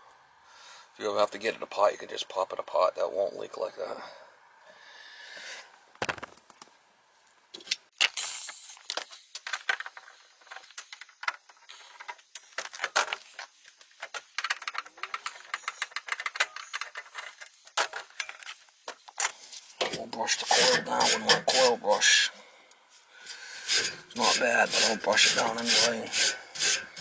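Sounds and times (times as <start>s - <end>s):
small metal parts clinking: 8.0s - 19.3s.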